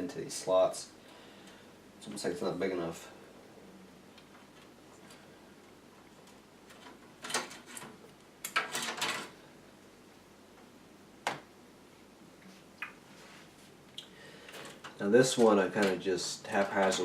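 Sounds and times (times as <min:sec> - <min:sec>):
computer parts scraping and clunking: 0:06.2 - 0:09.3, 0:14.4 - 0:17.0.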